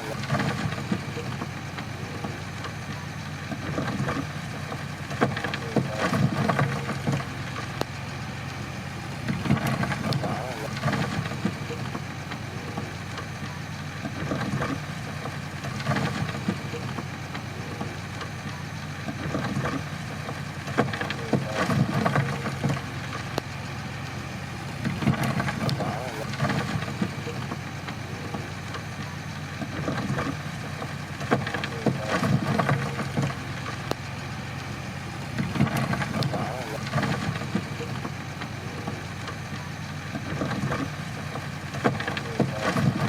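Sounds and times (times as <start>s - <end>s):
bulldozer diesel engine running: 0.0s - 43.0s.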